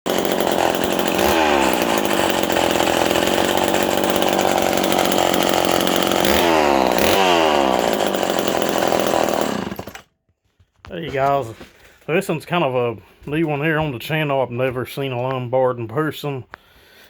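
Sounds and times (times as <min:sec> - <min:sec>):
two-stroke chainsaw running: 0:00.1 - 0:10.1.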